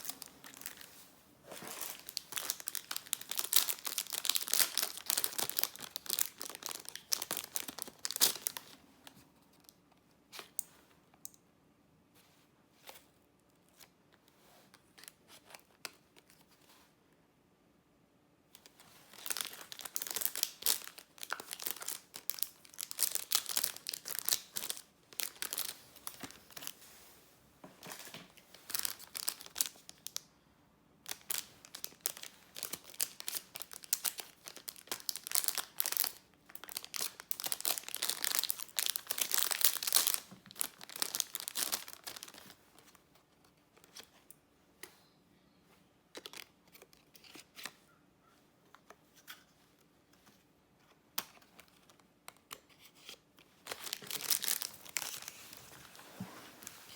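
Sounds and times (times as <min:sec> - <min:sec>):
packaging crinkling and tearing: 0:00.0 - 0:00.9, 0:01.6 - 0:08.8, 0:18.6 - 0:26.7, 0:27.9 - 0:30.2, 0:31.0 - 0:43.0, 0:51.3 - 0:56.9.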